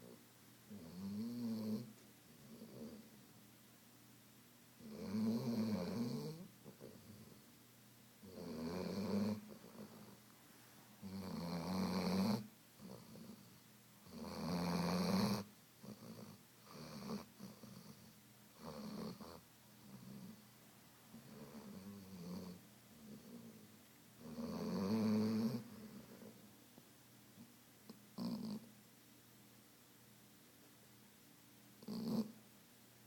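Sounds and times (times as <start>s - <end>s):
dog snoring: 0.0s - 3.1s, 4.8s - 7.4s, 8.2s - 10.2s, 11.0s - 20.5s, 21.1s - 26.5s, 27.9s - 28.7s, 31.8s - 32.4s.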